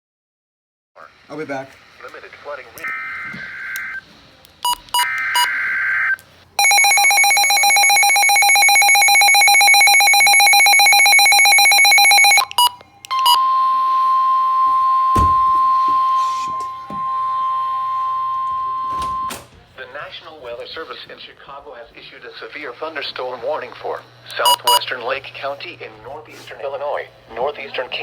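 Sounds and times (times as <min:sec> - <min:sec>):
steady single-pitched alarm tone: 0:04.7 - 0:19.4, 0:24.4 - 0:24.8.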